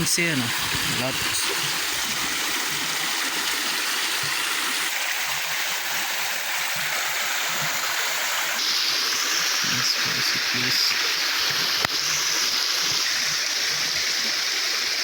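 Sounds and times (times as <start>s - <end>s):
river water flowing: 0.0s - 15.0s.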